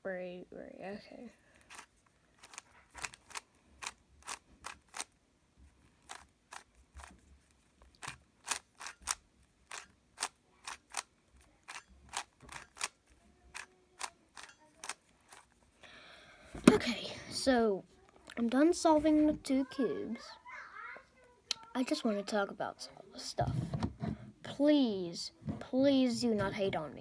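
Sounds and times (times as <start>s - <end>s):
puzzle cube layers clicking: 1.7s - 5.2s, 6.0s - 7.1s, 7.9s - 15.5s.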